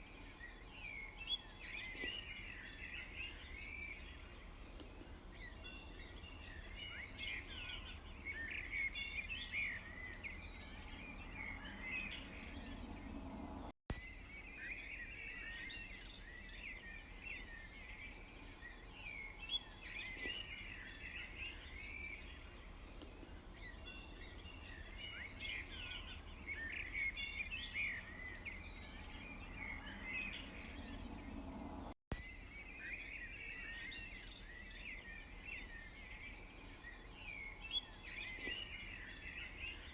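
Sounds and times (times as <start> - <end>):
songbirds chirping: 0.0 - 39.9
low background rumble: 28.1 - 32.0.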